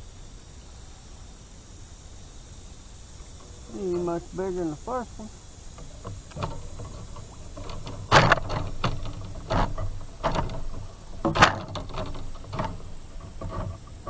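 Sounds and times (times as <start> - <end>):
fishing tackle clattering in a boat: 5.8 - 14.0.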